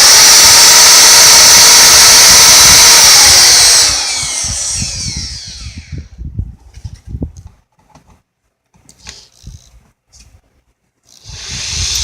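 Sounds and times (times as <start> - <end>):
power tool motor winding down: 0.0 - 6.1, 11.1 - 12.0.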